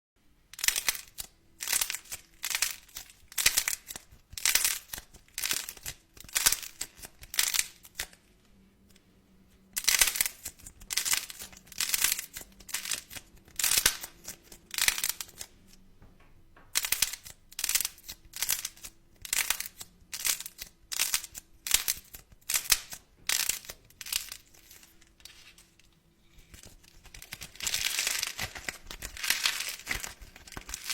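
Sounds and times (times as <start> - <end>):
crinkly material crumpling: 24.4 - 30.9.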